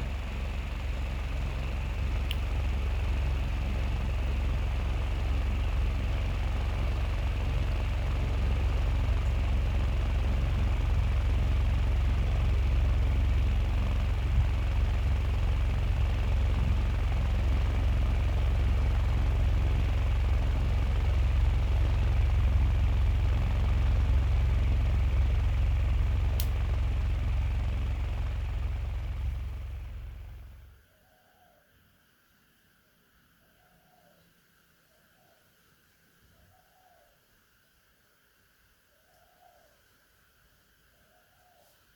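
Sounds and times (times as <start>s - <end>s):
fan motor humming: 0.0s - 30.9s
sharp click: 26.4s - 26.6s.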